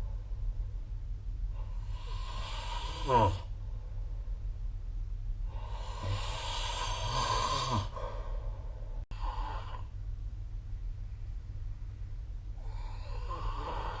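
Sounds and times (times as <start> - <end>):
low steady hum: 0.0 - 14.0
person snoring: 1.6 - 3.5, 5.5 - 8.1, 9.1 - 9.9, 12.6 - 14.0.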